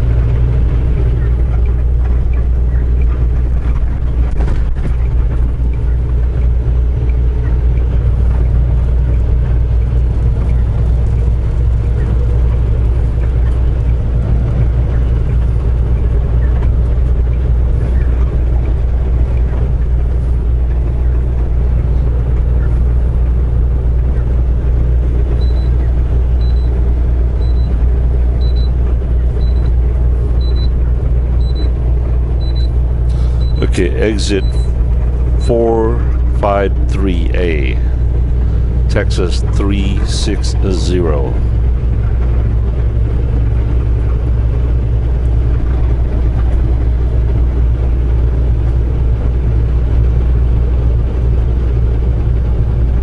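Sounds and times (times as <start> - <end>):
truck engine and road noise: 0.0 - 53.0
faint high beep: 34.4 - 34.7.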